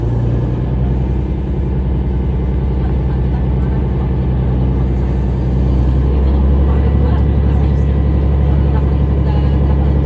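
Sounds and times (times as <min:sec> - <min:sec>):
diesel train engine running: 0:00.0 - 0:10.0.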